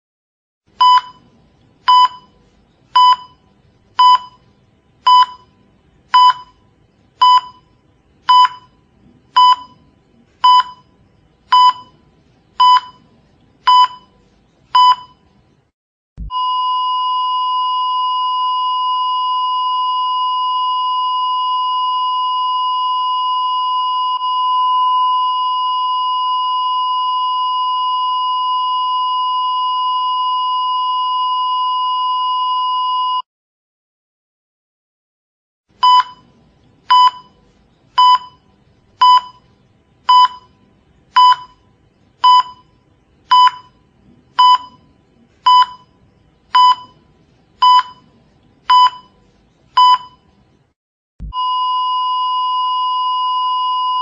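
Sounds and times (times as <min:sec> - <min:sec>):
heart monitor beeps: 0:00.8 - 0:01.3, 0:01.9 - 0:06.6, 0:07.2 - 0:08.8, 0:09.4 - 0:12.0, 0:12.6 - 0:13.1, 0:13.7 - 0:15.3, 0:16.2 - 0:33.2, 0:35.8 - 0:37.4, 0:38.0 - 0:39.5, 0:40.1 - 0:40.6, 0:41.2 - 0:43.8, 0:44.4 - 0:48.1, 0:48.7 - 0:49.2, 0:49.8 - 0:50.3, 0:51.2 - 0:54.0.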